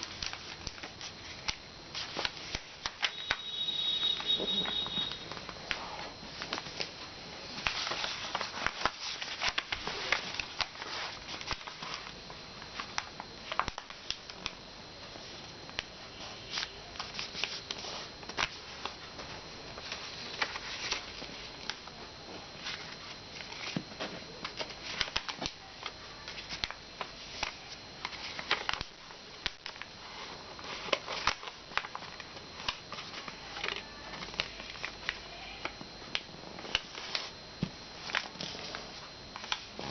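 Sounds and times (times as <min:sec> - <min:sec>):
paper being folded and creased: 0:00.0 - 0:06.9, 0:07.6 - 0:12.2, 0:12.8 - 0:14.6, 0:19.8 - 0:21.8, 0:24.5 - 0:35.3, 0:38.0 - 0:39.9.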